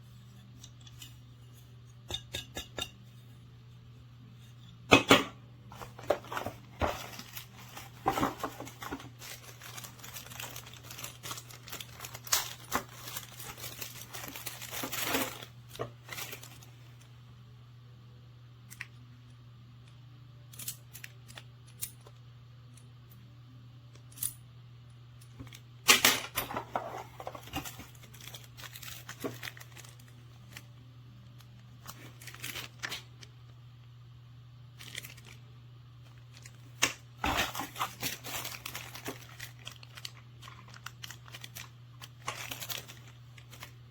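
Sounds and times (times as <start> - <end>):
steady low hum: 0.0 - 43.9.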